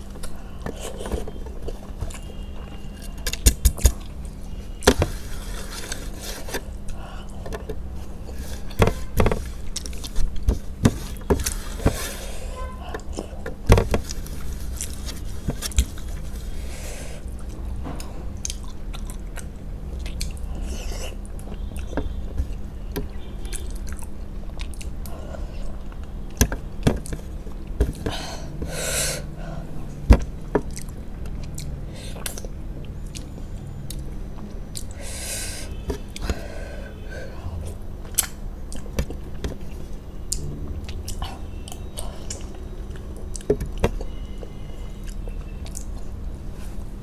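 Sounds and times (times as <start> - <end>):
person chewing food: 0.0 - 46.9
low hum: 36.9 - 38.8.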